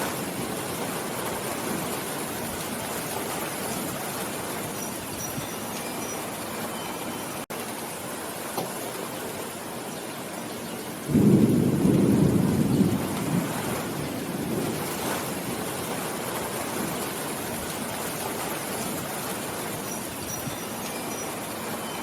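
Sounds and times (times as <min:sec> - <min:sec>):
thunder rumbling: 0:00.0 - 0:04.5, 0:11.0 - 0:19.1
steady rain falling: 0:00.0 - 0:22.0.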